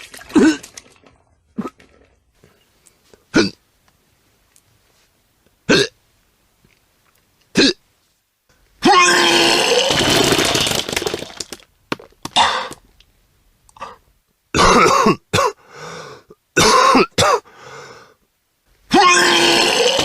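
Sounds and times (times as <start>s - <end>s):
person retching and vomiting: 0.0s - 2.0s, 3.3s - 3.6s, 5.7s - 6.0s, 7.5s - 7.8s, 8.8s - 11.6s, 12.2s - 12.8s, 14.6s - 15.6s, 16.6s - 17.4s, 18.9s - 20.0s.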